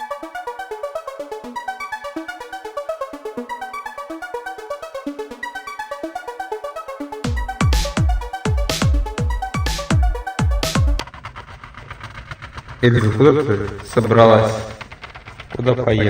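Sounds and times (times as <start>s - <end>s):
pulsing synthesizer melody: 0.0s - 11.0s
heavy bass beat: 7.2s - 11.0s.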